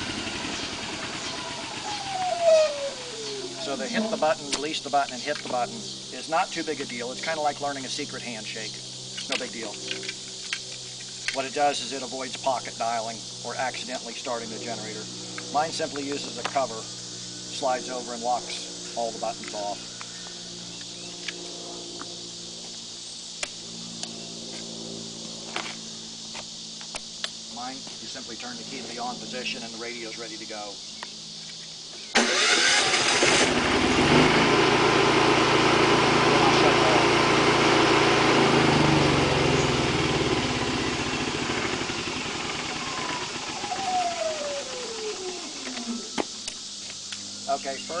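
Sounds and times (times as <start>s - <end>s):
generator engine winding down: 0.0s - 26.1s, 32.0s - 48.0s
low steady hum: 0.0s - 26.2s
high-pitched insect chorus: 0.0s - 33.5s, 38.6s - 48.0s.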